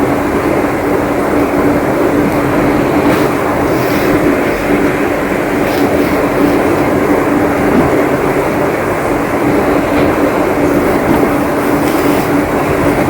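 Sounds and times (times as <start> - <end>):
constant low hum: 0.0 - 13.0
heavy rain pouring: 0.0 - 13.0.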